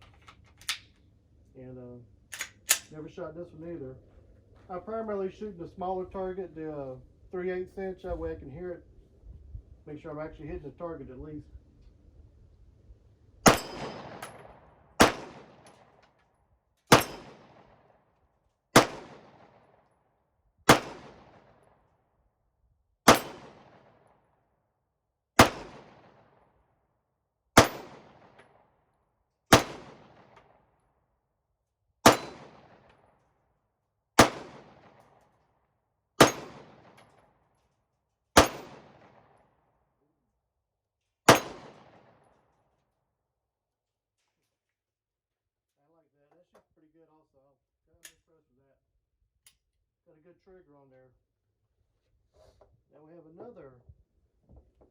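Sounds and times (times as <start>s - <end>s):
pistol shots: 13.4s - 15.9s, 16.9s - 17.8s, 18.8s - 19.7s, 20.7s - 21.6s, 23.1s - 24.0s, 25.4s - 26.3s, 27.6s - 28.5s, 29.5s - 30.5s, 32.0s - 33.0s, 34.2s - 35.0s, 36.2s - 37.1s, 38.4s - 39.3s, 41.3s - 42.2s
bullets ringing steel target: 13.5s - 15.7s, 16.9s - 17.4s, 23.1s - 23.6s, 27.6s - 28.1s, 32.0s - 32.6s, 36.2s - 36.9s, 38.4s - 38.9s, 41.3s - 41.8s.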